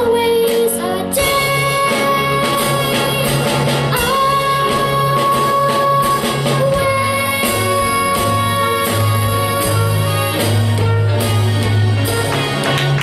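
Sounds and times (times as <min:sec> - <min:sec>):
girl singing a long note: 0:00.0 - 0:10.4
pit band with bass and drums: 0:00.0 - 0:13.0.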